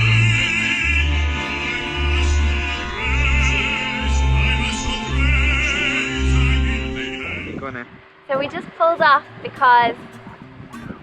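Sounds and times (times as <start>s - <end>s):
opera singer with vibrato: 0.0s - 7.6s
deep bass notes: 0.0s - 8.1s
instrumental accompaniment: 0.0s - 11.0s.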